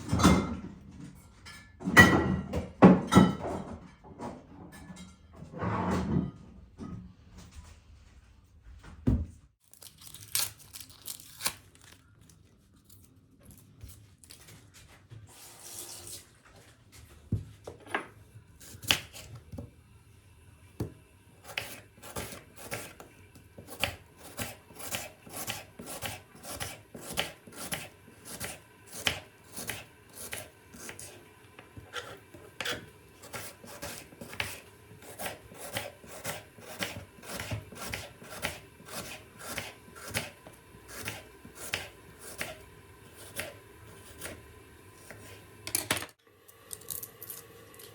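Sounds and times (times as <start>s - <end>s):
knife chopping on cutting board: 20.8s - 45.5s.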